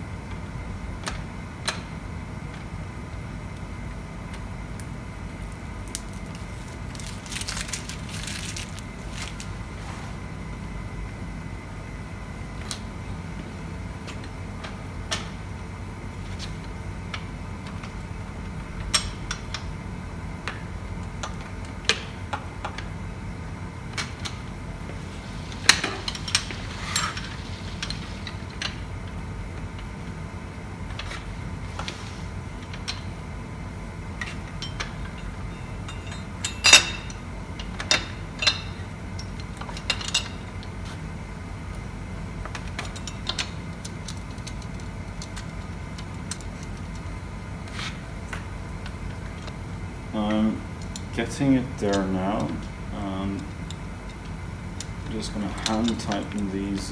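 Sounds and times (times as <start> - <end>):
steady low hum: 0.0 - 56.9.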